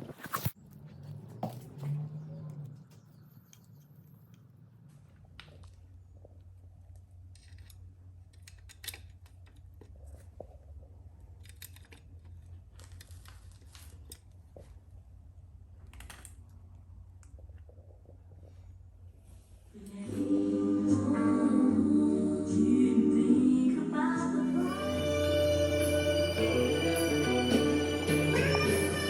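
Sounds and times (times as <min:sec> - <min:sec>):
small handling clicks and knocks: 0:06.9 - 0:14.3
steady low hum: 0:16.5 - 0:29.0.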